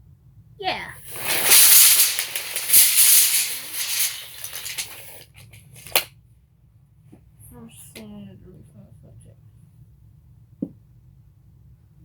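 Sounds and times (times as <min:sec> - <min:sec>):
tape measure blade rattling whir: 0:01.0 - 0:06.0.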